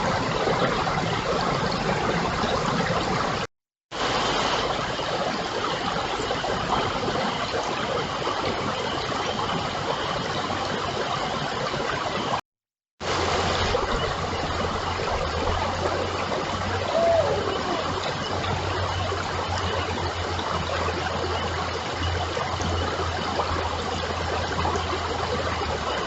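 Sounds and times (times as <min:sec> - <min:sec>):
running water rushing: 0:00.0 - 0:12.4, 0:13.0 - 0:26.0.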